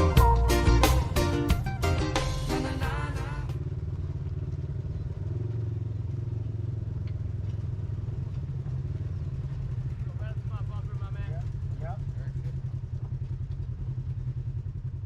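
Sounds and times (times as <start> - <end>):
music track: 0.0 - 3.6
atv engine droning: 0.0 - 15.0.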